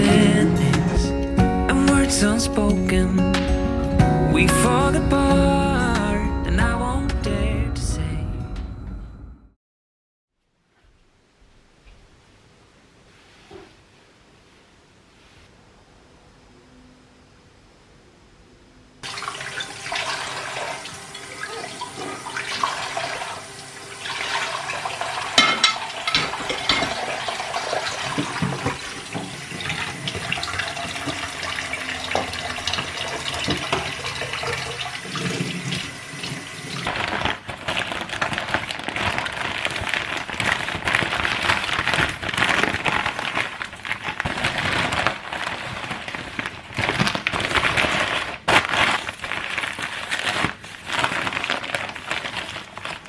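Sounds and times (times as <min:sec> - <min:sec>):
tap water running into sink: 0:19.0 - 0:37.0.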